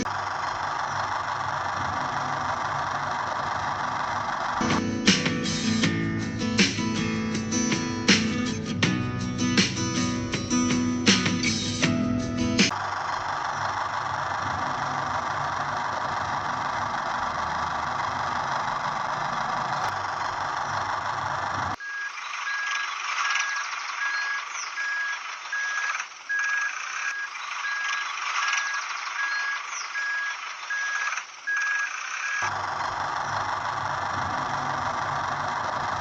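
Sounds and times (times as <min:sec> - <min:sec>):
steady motor noise: 0:00.0 - 0:08.0, 0:10.6 - 0:36.0
high electronic beeps: 0:21.8 - 0:32.5.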